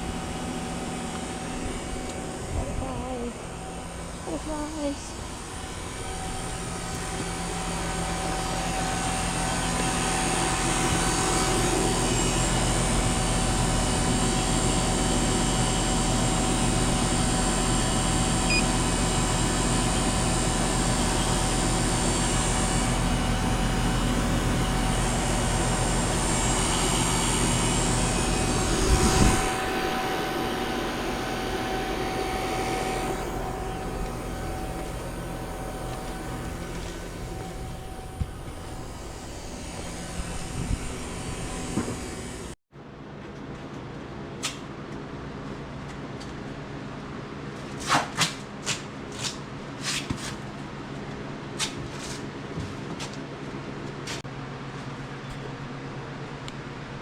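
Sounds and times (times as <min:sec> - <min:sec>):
motor droning with whine: 0:00.0 - 0:42.6.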